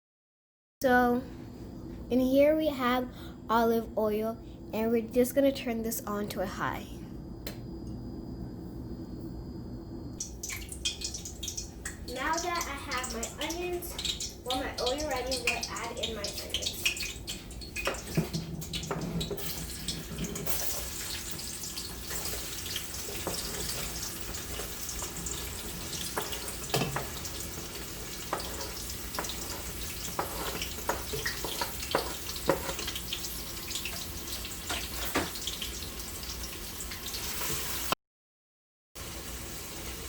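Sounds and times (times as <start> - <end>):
onions sizzling in oil: 10.2 - 38.0, 39.0 - 40.0.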